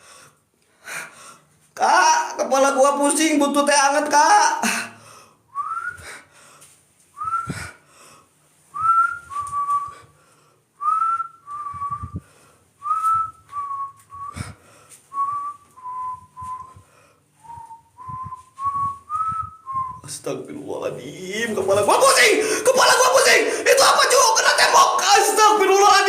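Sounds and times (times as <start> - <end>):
person whistling a slow tune: 5.5 - 6.2, 7.2 - 7.8, 8.7 - 10.1, 10.8 - 12.2, 12.8 - 20.1.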